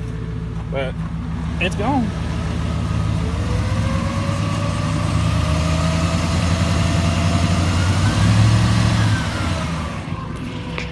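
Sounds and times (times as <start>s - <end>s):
truck engine running: 0.0s - 10.9s.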